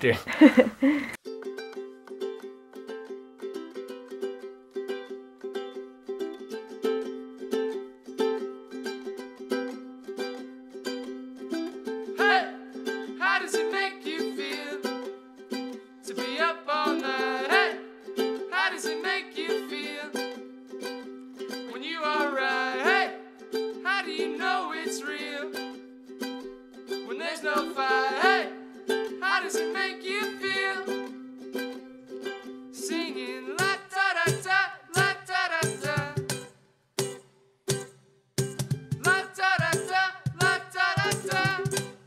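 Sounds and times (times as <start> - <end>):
ukulele chords: 0.0 - 42.0
person singing: 12.1 - 15.1, 16.0 - 20.4, 21.6 - 25.8, 27.0 - 31.2, 32.7 - 36.3, 39.0 - 42.0.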